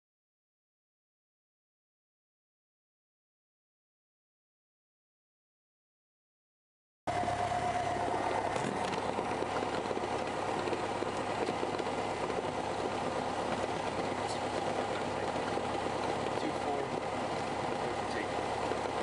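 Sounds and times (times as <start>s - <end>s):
small aircraft engine running: 7.1s - 19.0s.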